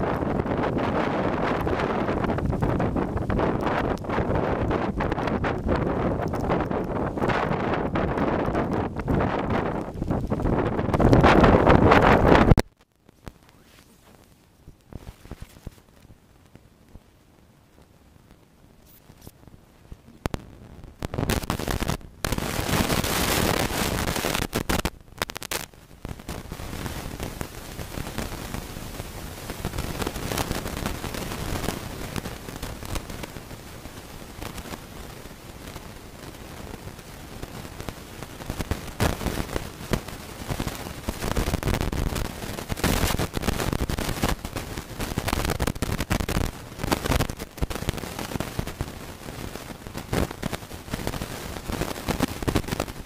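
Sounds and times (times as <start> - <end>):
storm wind on microphone: 0.0 - 12.6, 17.7 - 53.0
wind buffeting microphone: 0.0 - 12.6
rain: 0.0 - 53.0.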